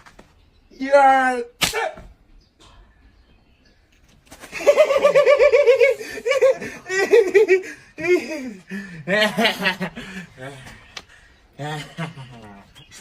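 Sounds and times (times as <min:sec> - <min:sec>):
hearty laughter: 0:04.4 - 0:12.9.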